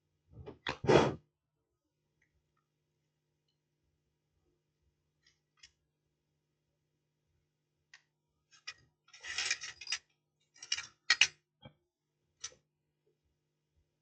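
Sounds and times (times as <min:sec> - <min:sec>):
small hand tools clicking and scraping: 0:08.5 - 0:11.4.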